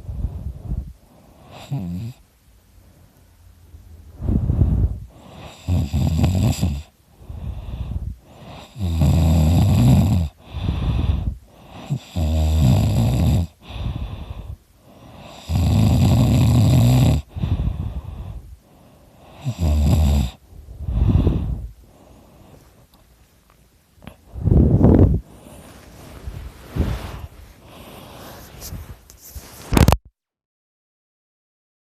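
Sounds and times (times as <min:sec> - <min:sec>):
quiet breaths: 0:00.0 - 0:29.9
man snoring loudly: 0:01.4 - 0:02.2, 0:05.3 - 0:06.9, 0:07.8 - 0:14.2, 0:15.0 - 0:17.6, 0:19.3 - 0:21.6.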